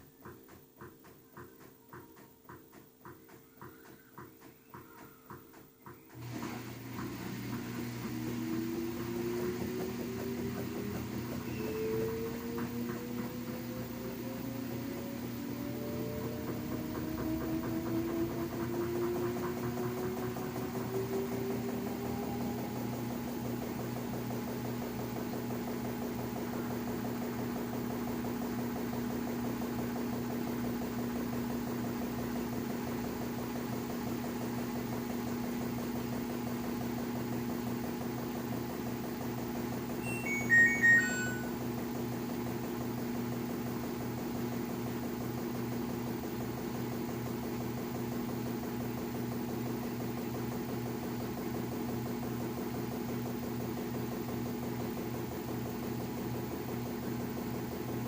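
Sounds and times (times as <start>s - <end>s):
washing machine humming: 0.0s - 58.0s
high electronic beeps: 40.0s - 41.6s.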